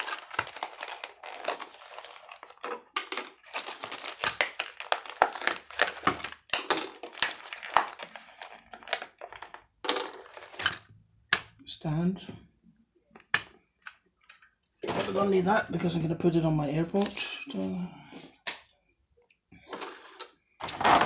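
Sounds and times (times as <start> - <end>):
packaging crinkling and rustling: 0.0 - 10.8, 19.6 - 21.0.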